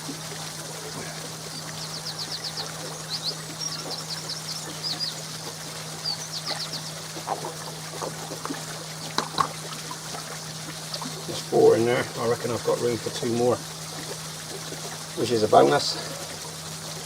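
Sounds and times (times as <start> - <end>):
steady low hum: 0.0 - 17.0
water pouring and trickling: 0.0 - 17.0
small bird chirping: 1.4 - 7.6.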